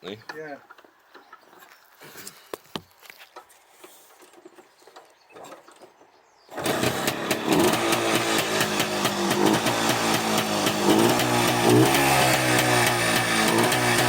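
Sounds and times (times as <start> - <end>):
two-stroke motorcycle engine running: 6.5 - 14.0.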